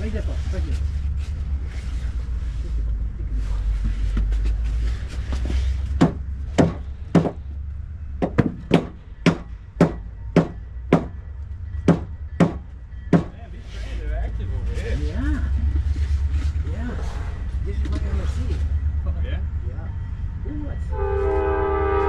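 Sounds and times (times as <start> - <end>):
hammer striking nails: 8.2 - 11.2, 11.9 - 13.3.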